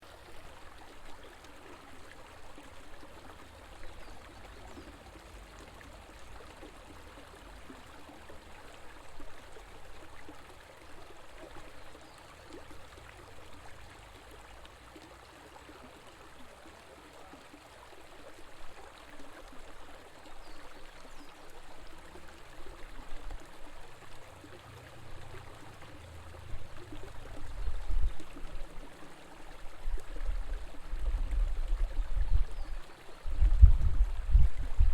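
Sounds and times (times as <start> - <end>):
river water flowing over rocks: 0.0 - 34.9.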